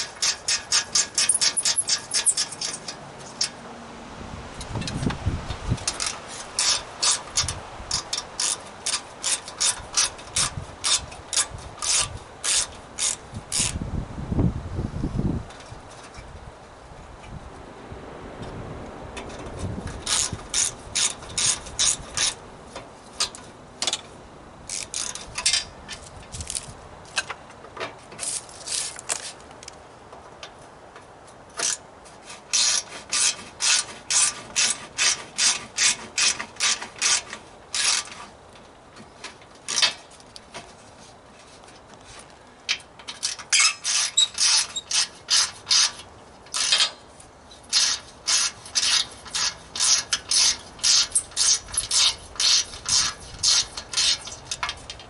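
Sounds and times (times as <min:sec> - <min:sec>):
ratchet wrench clicking: 0:00.2 - 0:02.9, 0:05.9 - 0:13.8, 0:47.7 - 0:55.0.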